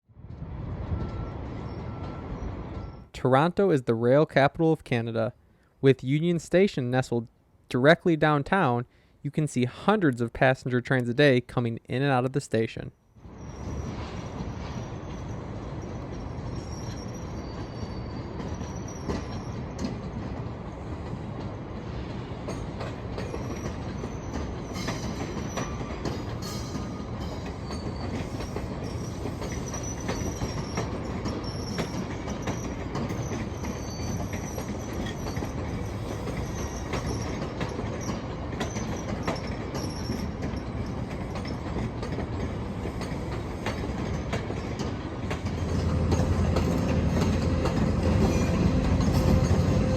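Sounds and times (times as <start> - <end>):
train wheels rumbling on rail: 13.2 - 49.9
high-pitched wheel squeals: 13.3 - 19.6, 26.4 - 37.4, 38.0 - 40.8.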